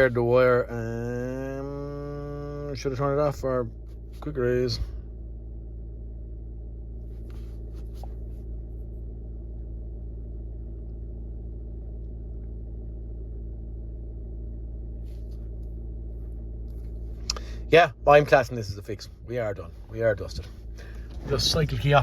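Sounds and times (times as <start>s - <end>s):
car engine idling: 0.0s - 22.0s
faint rustles: 7.0s - 8.9s, 14.8s - 17.3s.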